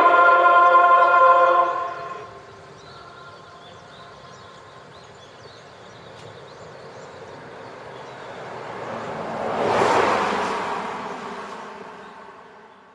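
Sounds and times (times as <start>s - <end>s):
vehicle passing on road: 5.5s - 12.9s.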